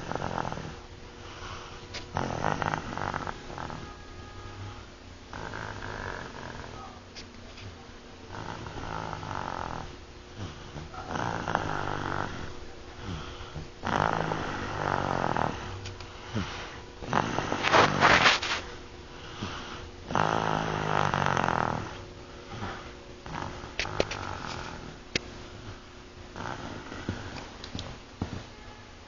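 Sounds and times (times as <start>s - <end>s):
child snoring: 0.0s - 7.0s, 8.3s - 25.8s, 26.4s - 27.5s.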